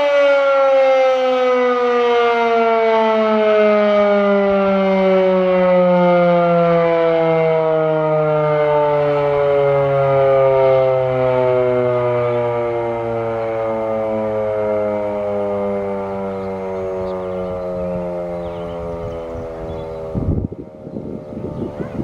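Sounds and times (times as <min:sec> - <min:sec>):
fire siren winding down: 0:00.0 - 0:22.0.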